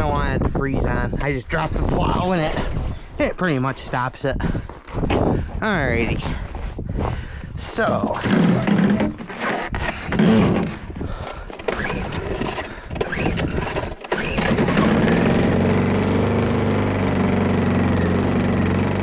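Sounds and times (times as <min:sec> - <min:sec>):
irregular knocking and handling noise: 0:07.8 - 0:14.2
generator engine starting and running: 0:08.2 - 0:19.0.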